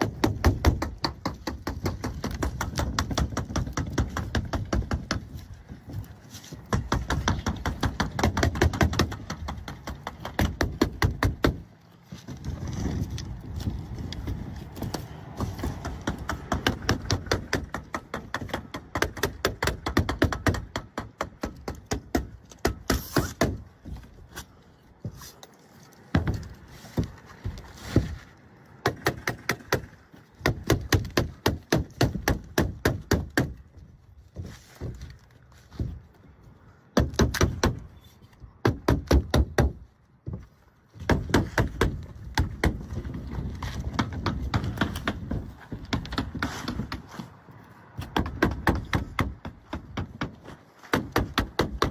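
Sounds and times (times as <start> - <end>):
rapid nailing strikes: 0.0 - 11.6, 14.8 - 24.0, 28.8 - 33.8, 37.0 - 37.8, 41.0 - 47.2, 48.0 - 51.9.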